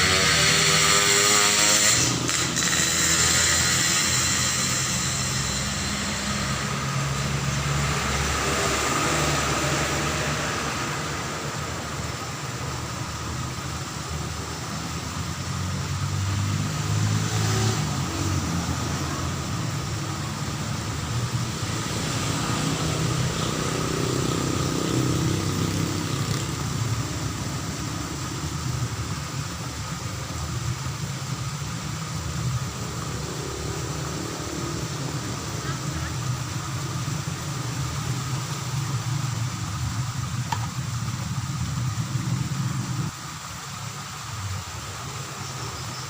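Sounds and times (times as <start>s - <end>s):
high-pitched hum: 0.0s - 10.3s
passing vehicle engines rumbling: 0.0s - 46.0s.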